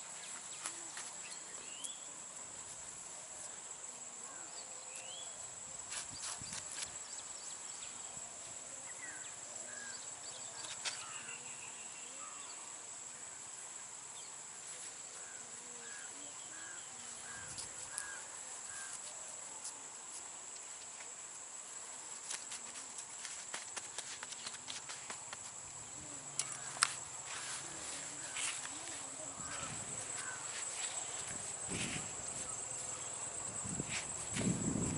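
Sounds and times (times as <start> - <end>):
high-pitched insect drone: 8.9 - 13.3, 25.8 - 34.9.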